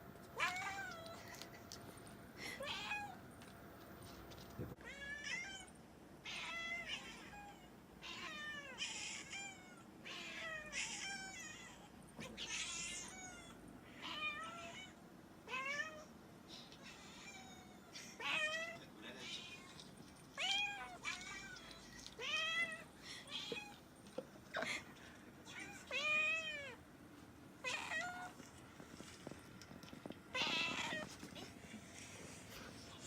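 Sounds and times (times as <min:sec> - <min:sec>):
cat meowing: 0:30.3 - 0:31.1.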